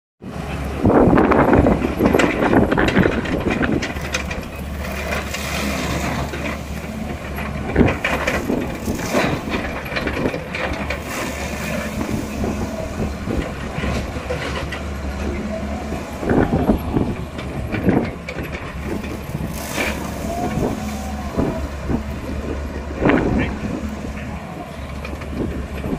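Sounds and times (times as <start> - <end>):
diesel engine under load: 0.2 - 25.9
crackling and snapping: 18.4 - 21.6.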